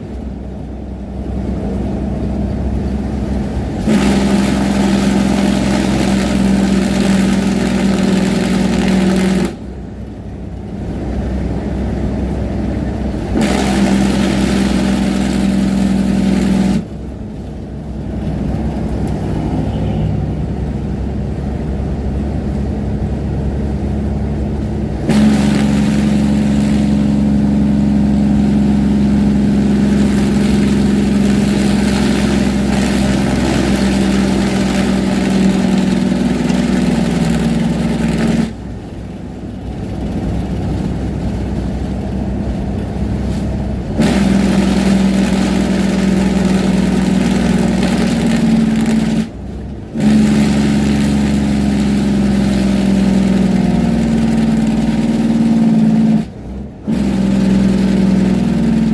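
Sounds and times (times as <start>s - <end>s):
truck engine brake drone: 3.4s - 9.8s, 24.1s - 38.8s.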